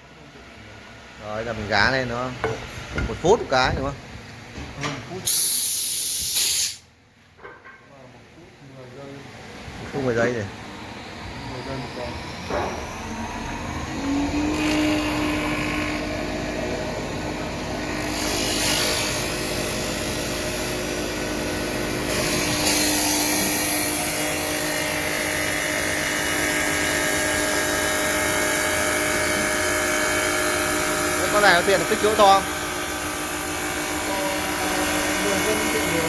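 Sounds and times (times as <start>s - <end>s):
cutters hissing on wood: 5.3s - 6.8s, 17.4s - 36.0s
lathe motor whine: 9.3s - 36.0s.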